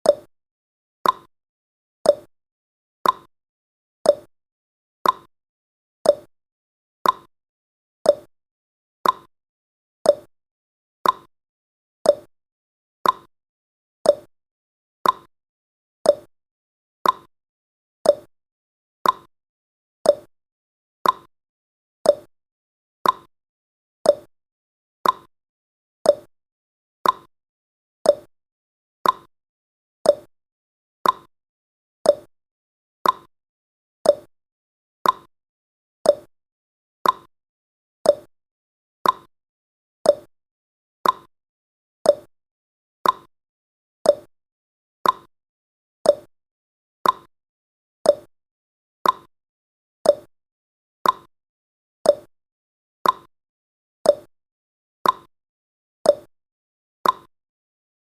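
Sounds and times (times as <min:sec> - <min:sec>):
clock tick sound effect: 0:00.0 - 0:00.3, 0:01.0 - 0:01.3, 0:02.1 - 0:02.3, 0:03.0 - 0:03.3, 0:04.1 - 0:04.3, 0:05.0 - 0:05.3, 0:06.1 - 0:06.3, 0:07.0 - 0:07.3, 0:08.1 - 0:08.3, 0:09.0 - 0:09.3, 0:10.1 - 0:10.3, 0:11.0 - 0:11.3, 0:12.1 - 0:12.3, 0:13.0 - 0:13.3, 0:14.1 - 0:14.3, 0:15.0 - 0:15.3, 0:16.1 - 0:16.3, 0:17.0 - 0:17.3, 0:18.1 - 0:18.3, 0:19.0 - 0:19.3, 0:20.1 - 0:20.3, 0:21.0 - 0:21.3, 0:22.1 - 0:22.3, 0:23.0 - 0:23.3, 0:24.1 - 0:24.3, 0:25.0 - 0:25.3, 0:26.1 - 0:26.3, 0:27.0 - 0:27.3, 0:28.1 - 0:28.3, 0:29.0 - 0:29.3, 0:30.1 - 0:30.3, 0:31.0 - 0:31.3, 0:32.1 - 0:32.3, 0:33.0 - 0:33.3, 0:34.0 - 0:34.3, 0:35.0 - 0:35.3, 0:36.0 - 0:36.3, 0:37.0 - 0:37.3, 0:38.1 - 0:38.3, 0:39.0 - 0:39.3, 0:40.0 - 0:40.3, 0:41.0 - 0:41.3, 0:42.1 - 0:42.3, 0:43.0 - 0:43.3, 0:44.1 - 0:44.3, 0:45.0 - 0:45.3, 0:46.1 - 0:46.3, 0:47.0 - 0:47.3, 0:48.1 - 0:48.3, 0:49.0 - 0:49.3, 0:50.1 - 0:50.3, 0:51.0 - 0:51.3, 0:52.1 - 0:52.3, 0:53.0 - 0:53.3, 0:54.1 - 0:54.3, 0:55.0 - 0:55.3, 0:56.1 - 0:56.3, 0:57.0 - 0:57.3.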